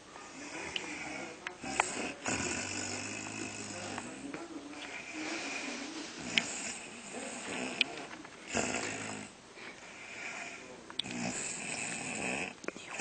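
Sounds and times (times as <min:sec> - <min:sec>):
woman snoring: 0:08.5 - 0:09.3, 0:11.1 - 0:13.0.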